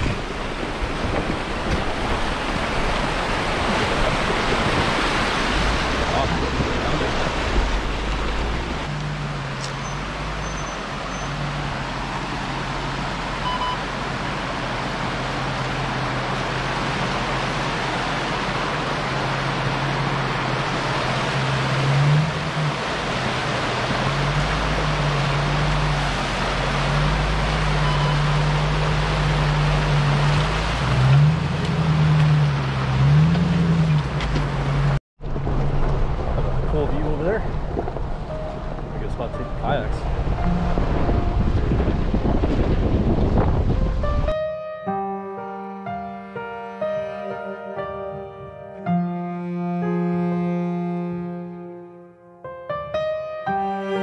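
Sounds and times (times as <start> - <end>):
engine hum: 0.0 - 52.2
road and tyre noise: 0.0 - 54.0.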